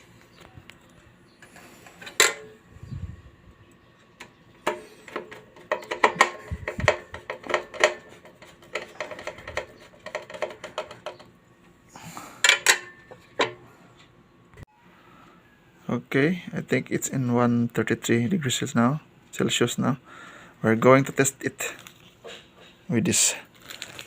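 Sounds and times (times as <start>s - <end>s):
hard parts clicking and clattering: 1.4s - 2.6s, 4.2s - 11.4s, 12.4s - 13.6s.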